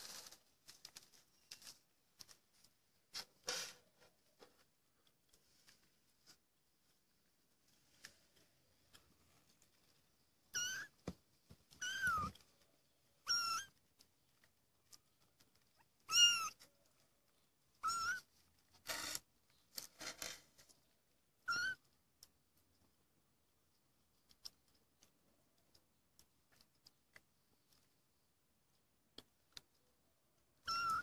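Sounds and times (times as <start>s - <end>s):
kittens mewing: 30.6s - 31.0s.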